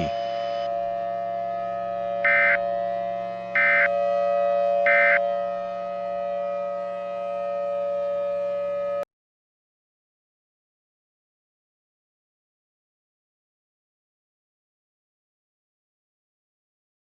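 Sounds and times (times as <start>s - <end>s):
steady droning tone: 0.0s - 9.1s.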